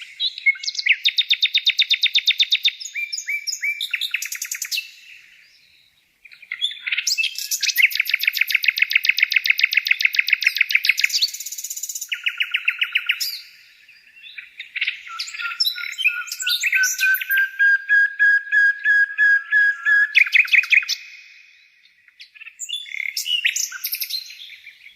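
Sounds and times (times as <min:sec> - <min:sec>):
songbirds trilling: 0:02.6 - 0:24.9.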